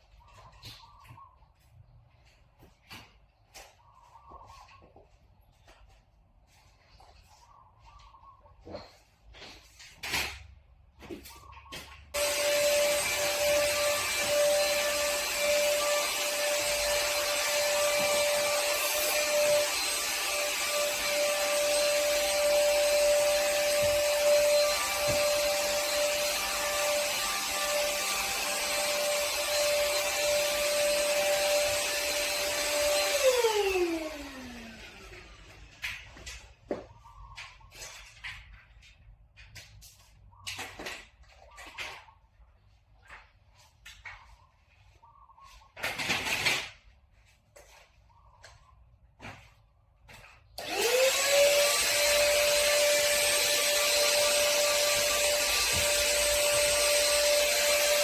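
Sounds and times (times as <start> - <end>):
electric motor whining: 12.2 - 35.8, 50.6 - 58.0.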